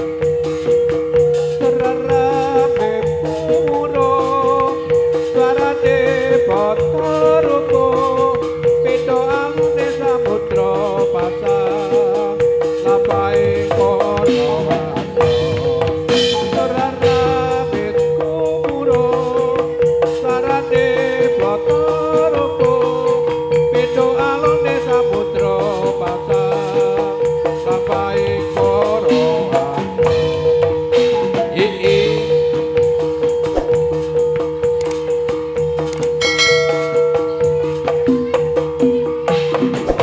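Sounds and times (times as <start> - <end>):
drums: 0.0 - 40.0
shaking percussion rattle: 0.0 - 40.0
wavering melody line: 36.0 - 40.0
steady held tone: 36.1 - 38.4.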